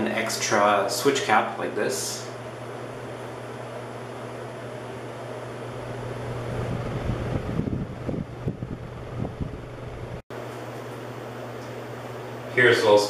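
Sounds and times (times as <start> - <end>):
ceiling fan motor hum: 0.0 - 13.0
wind buffeting microphone: 5.8 - 10.2
rush of air: 5.9 - 10.2.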